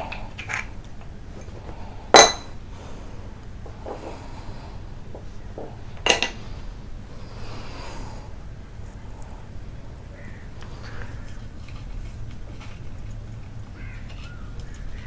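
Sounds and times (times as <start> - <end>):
sharp metallic clinks: 2.2 - 2.6.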